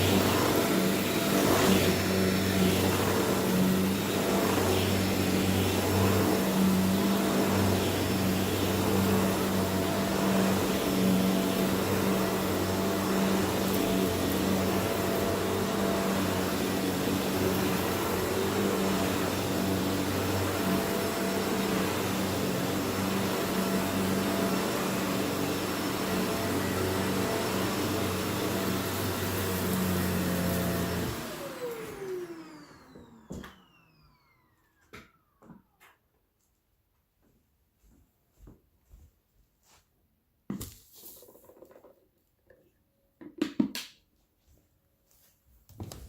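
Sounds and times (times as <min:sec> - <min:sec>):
vacuum cleaner running: 0:00.0 - 0:35.9.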